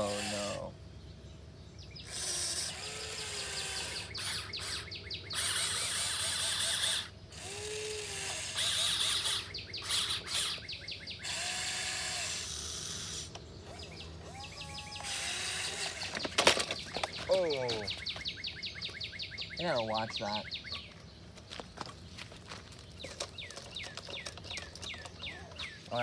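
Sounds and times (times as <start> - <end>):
electric motors whining and grinding: 0.0 - 0.7, 2.0 - 19.1, 19.9 - 26.0.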